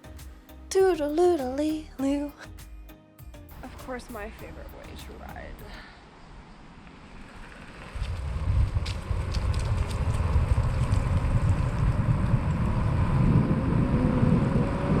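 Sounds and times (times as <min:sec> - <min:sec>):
wind rumbling over microphone: 0:06.4 - 0:15.0.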